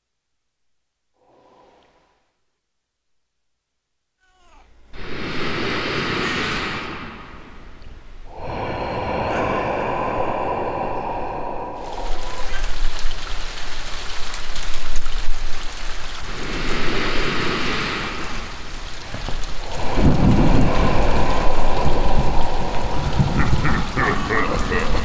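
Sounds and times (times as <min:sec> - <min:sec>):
heavy rain falling: 0:08.4 - 0:25.0
rolling thunder: 0:19.0 - 0:25.0.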